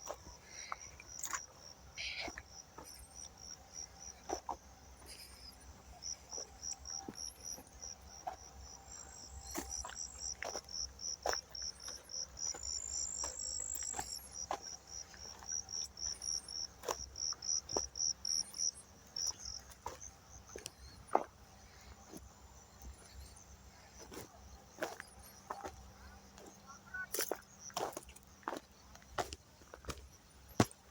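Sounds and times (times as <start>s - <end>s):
cricket chirping: 0.0s - 30.9s.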